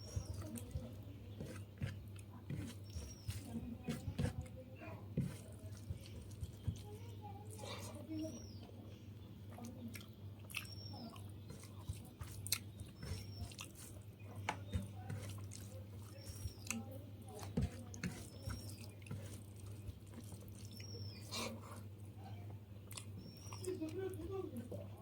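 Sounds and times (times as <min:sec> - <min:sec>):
wet chewing and lip smacking: 0:09.5 - 0:14.6, 0:15.2 - 0:21.9, 0:22.8 - 0:24.0.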